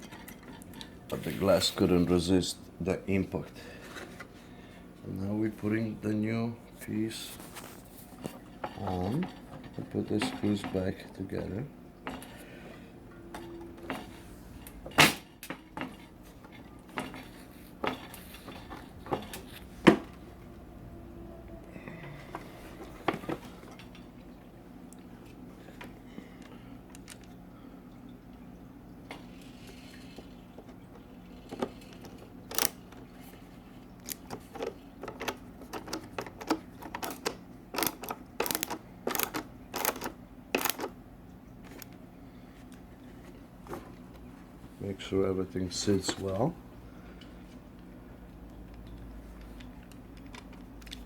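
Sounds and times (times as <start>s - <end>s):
screwdriver clicking on plastic: 34.1s - 40.9s.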